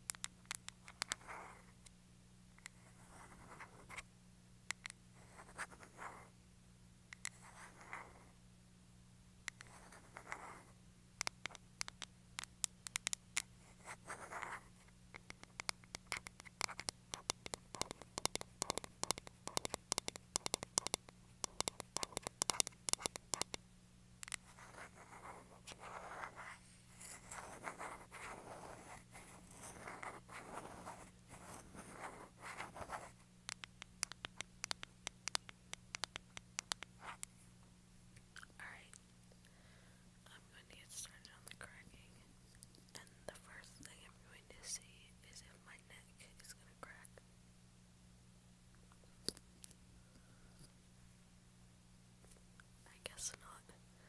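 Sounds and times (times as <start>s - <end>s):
rapid sharp clicks: 15.2s - 23.6s, 33.5s - 37.3s
scratchy brushing strokes: 24.4s - 33.2s.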